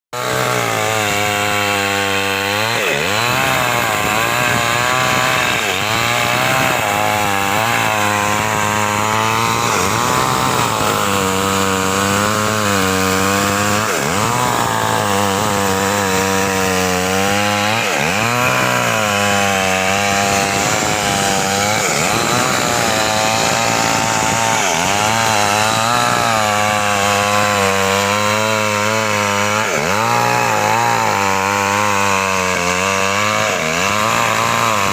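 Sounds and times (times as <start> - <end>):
chainsaw cutting wood: 0.1 - 34.9.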